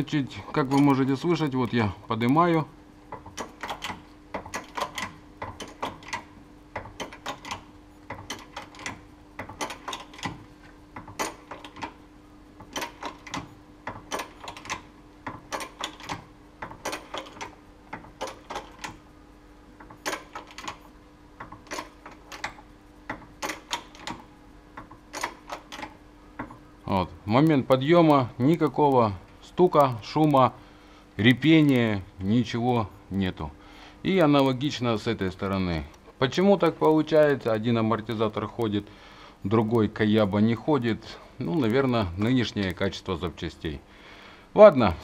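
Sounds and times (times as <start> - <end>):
jack clicking: 0.0 - 1.6, 3.1 - 12.0, 12.6 - 19.0, 19.8 - 26.6.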